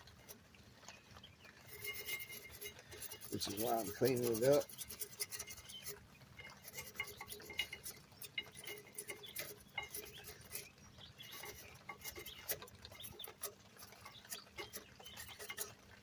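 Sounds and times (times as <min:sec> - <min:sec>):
scrubbing metal clips: 0:01.6 - 0:16.0
light metallic clinks: 0:06.4 - 0:15.7.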